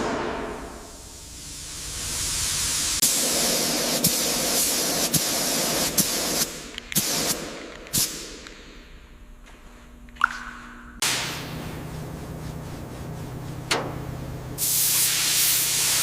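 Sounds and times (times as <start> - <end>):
hissing spray: 0.8 - 7.4, 14.6 - 16.0.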